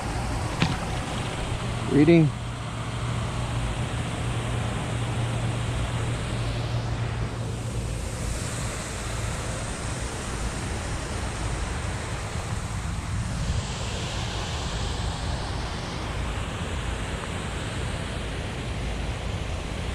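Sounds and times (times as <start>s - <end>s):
water lapping: 0.0s - 3.5s.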